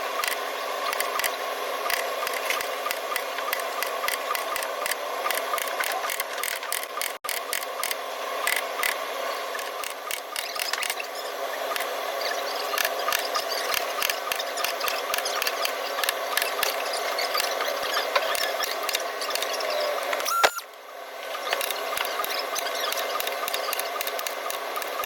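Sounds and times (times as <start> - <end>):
sharp metallic clicks: 0.2 - 9.0, 21.4 - 25.0.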